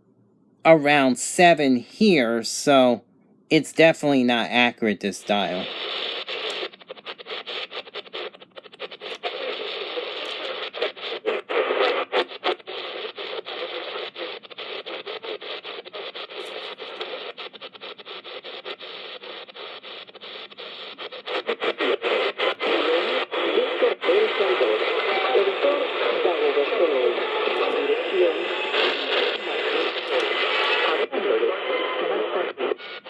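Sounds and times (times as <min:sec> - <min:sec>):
radio static and hiss: 0:00.7 - 0:33.0.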